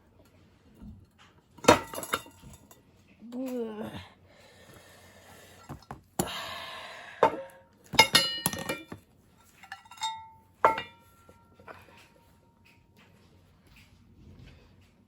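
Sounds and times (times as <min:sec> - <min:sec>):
metal parts knocking and clinking: 0:01.6 - 0:02.8, 0:07.2 - 0:12.1.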